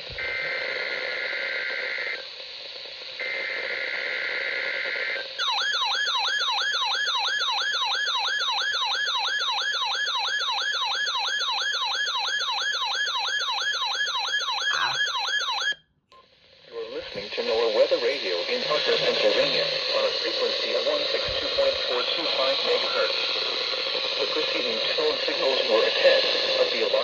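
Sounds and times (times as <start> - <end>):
warbling electronic alarm: 0.0 - 15.8, 16.7 - 27.0.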